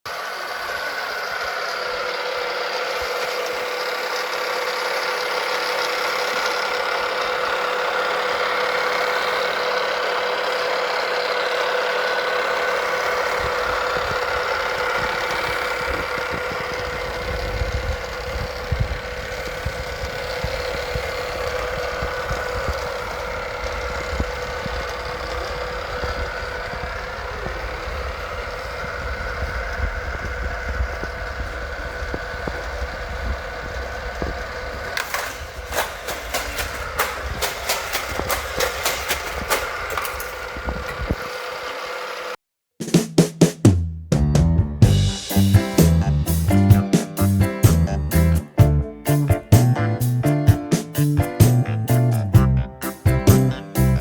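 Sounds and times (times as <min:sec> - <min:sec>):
toy cars rumbling and clattering: 0:00.1 - 0:42.4
mechanical whirring hum: 0:00.4 - 0:42.4.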